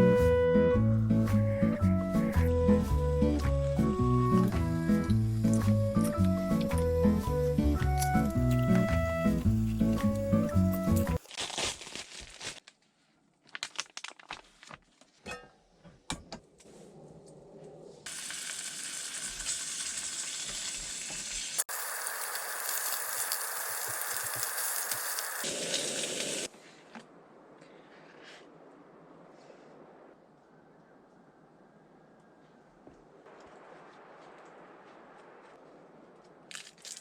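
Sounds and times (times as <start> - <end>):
steady sizzling hiss: 18.1 - 26.5.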